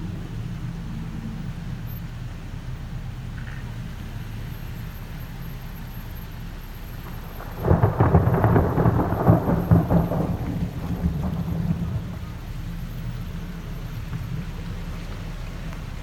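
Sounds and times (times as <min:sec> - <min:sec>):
low background noise: 0:00.0 - 0:16.0
thunder clap and rumble: 0:06.8 - 0:16.0.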